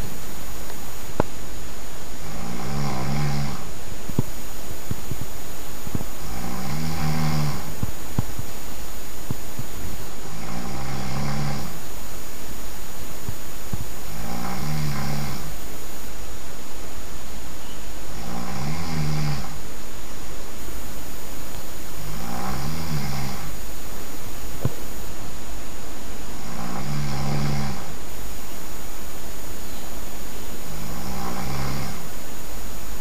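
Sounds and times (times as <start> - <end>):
person snoring loudly: 2.2 - 3.8, 6.1 - 7.9, 10.2 - 11.9, 14.0 - 15.6, 18.1 - 19.6, 22.0 - 23.6, 26.3 - 28.0, 30.6 - 32.2.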